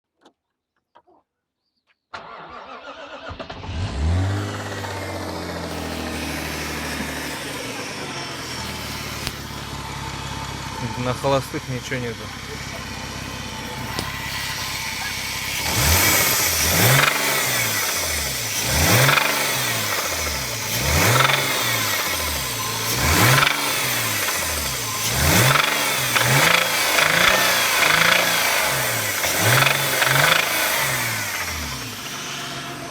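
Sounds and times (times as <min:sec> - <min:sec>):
car engine revving in blips: 0:02.6 - 0:32.9.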